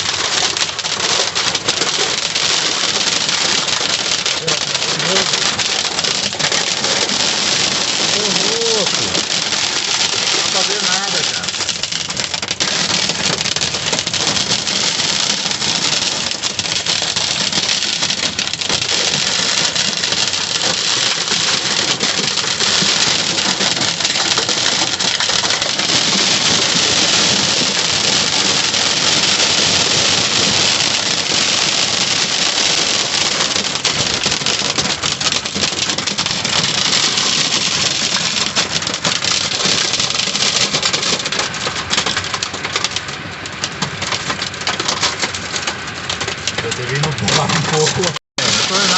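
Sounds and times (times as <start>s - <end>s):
heavy rain on a car: 0.0s - 48.9s.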